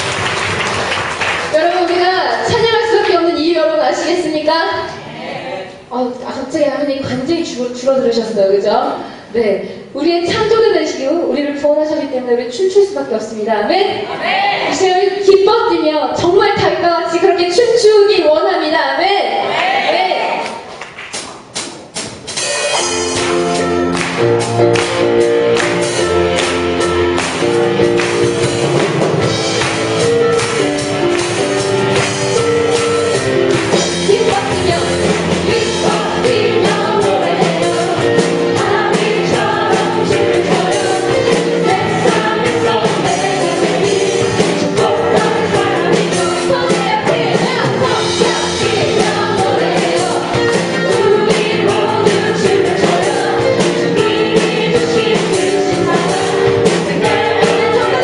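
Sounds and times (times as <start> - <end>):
drum kit: 0.0 - 3.2, 20.7 - 58.0
live band playing worship song: 20.8 - 58.0
guitar: 22.3 - 58.0
people singing: 33.6 - 58.0.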